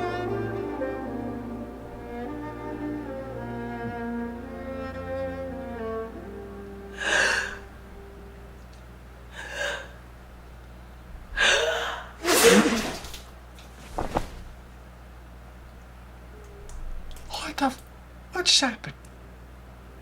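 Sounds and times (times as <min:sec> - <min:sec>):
sharp breathy in-breaths: 0:07.0 - 0:07.7, 0:09.3 - 0:10.0, 0:11.3 - 0:12.2
person sneezing loudly: 0:11.4 - 0:13.1.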